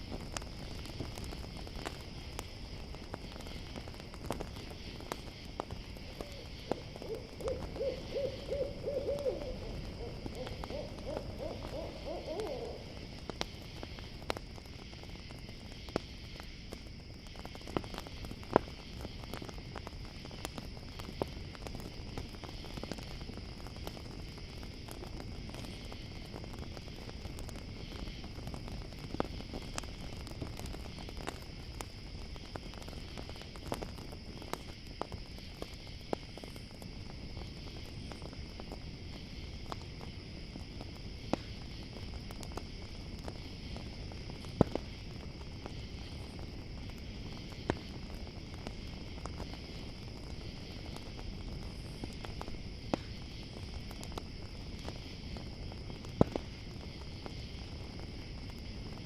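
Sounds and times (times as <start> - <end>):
campfire crackling and popping: 0.0 - 59.0
crickets chirring: 0.0 - 59.0
owl hooting: 6.1 - 13.0.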